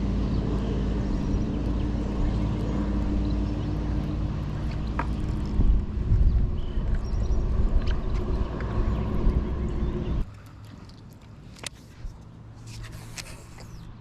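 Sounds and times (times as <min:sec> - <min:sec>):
wind rumbling on microphone: 0:00.0 - 0:10.3
boat motor running: 0:00.0 - 0:10.9.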